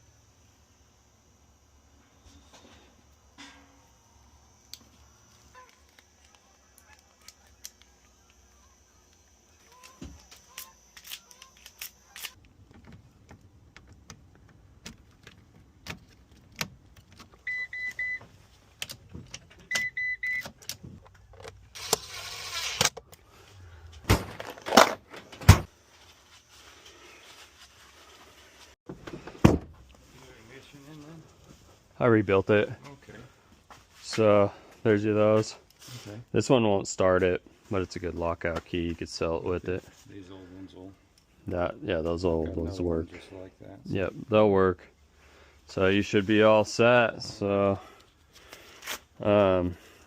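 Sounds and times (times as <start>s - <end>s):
short electronic beeps: 17.5s - 18.2s, 19.7s - 20.5s.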